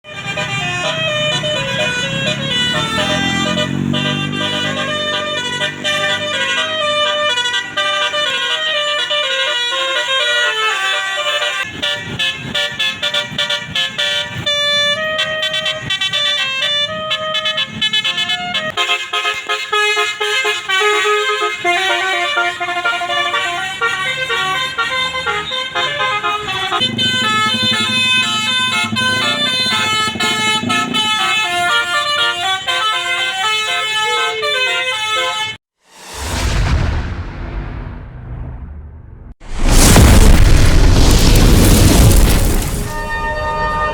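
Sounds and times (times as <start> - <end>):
multi-tone bus air horns: 0.0 - 35.6, 42.9 - 43.9
deep boom: 36.0 - 43.9.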